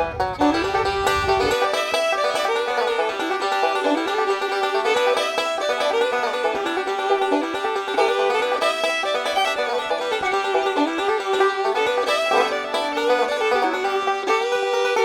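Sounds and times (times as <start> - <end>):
upbeat bluegrass banjo music: 0.0 - 15.0.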